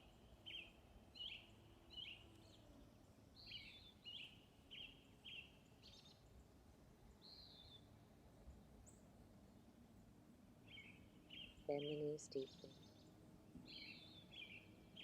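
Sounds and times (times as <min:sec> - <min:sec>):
bird chirping: 0:00.0 - 0:02.8, 0:03.4 - 0:06.4, 0:07.1 - 0:08.0, 0:10.6 - 0:15.0
soft outdoor hush: 0:00.0 - 0:15.0.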